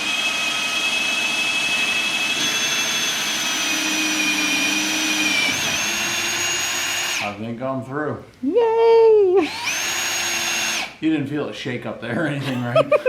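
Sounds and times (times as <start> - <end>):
electric drill boring into wood: 0.0 - 7.3, 9.4 - 11.0.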